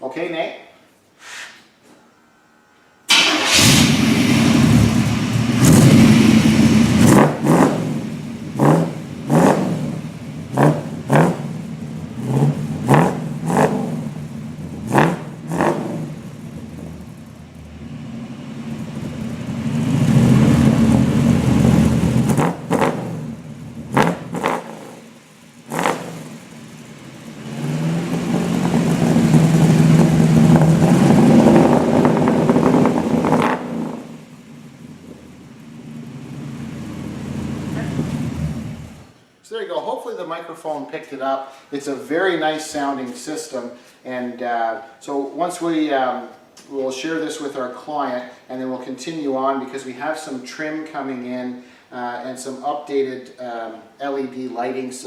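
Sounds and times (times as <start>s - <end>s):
pickup engine revving: 3.1s - 39.2s.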